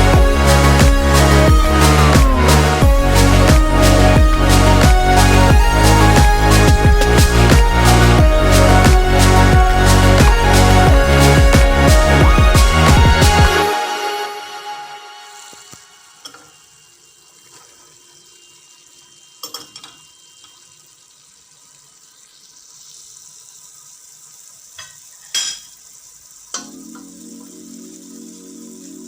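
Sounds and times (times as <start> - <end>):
food sizzling in a pan: 15.1 - 29.0.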